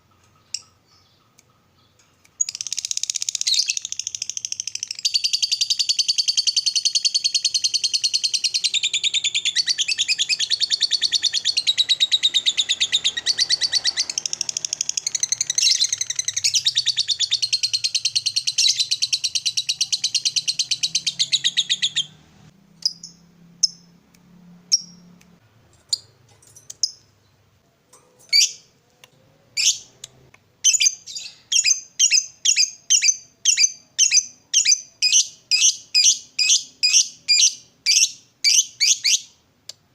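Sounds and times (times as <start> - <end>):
quick regular bird chirps: 0.0 - 23.9
lovebird rapid high chattering: 2.3 - 22.1.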